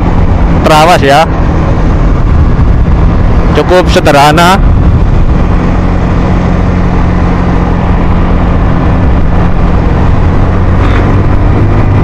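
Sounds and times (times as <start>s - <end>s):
scooter engine running: 4.6s - 12.0s.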